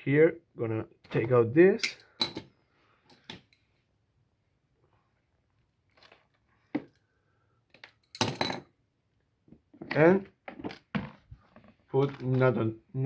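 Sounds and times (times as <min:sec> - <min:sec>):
clicks and rustling of small parts: 0:07.7 - 0:08.6, 0:09.8 - 0:12.6.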